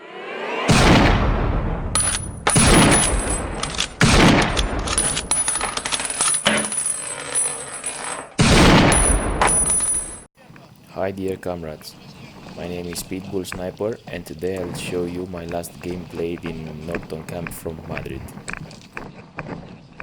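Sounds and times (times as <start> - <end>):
rising whoosh: 0.0 - 2.4
heavy booming hits: 0.7 - 4.9.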